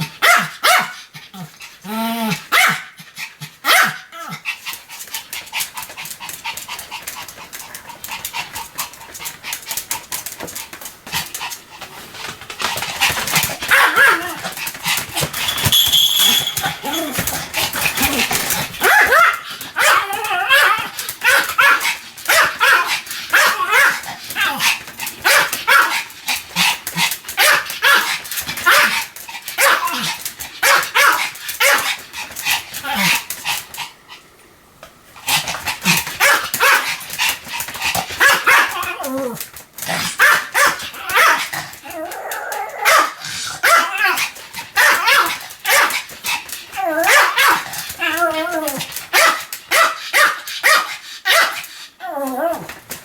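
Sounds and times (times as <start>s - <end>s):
dog barking: 0.2s - 1.0s, 2.5s - 3.0s, 3.7s - 4.0s, 36.2s - 36.8s, 40.2s - 41.4s, 42.8s - 44.0s, 49.1s - 51.6s.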